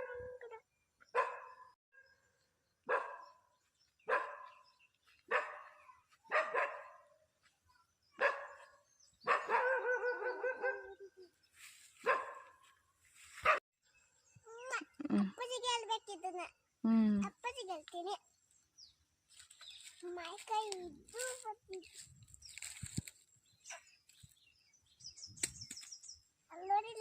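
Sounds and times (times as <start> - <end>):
dog barking: 0.0 - 0.4, 1.1 - 1.8, 2.9 - 3.4, 4.0 - 4.6, 5.3 - 7.1, 8.2 - 11.1, 12.0 - 12.7.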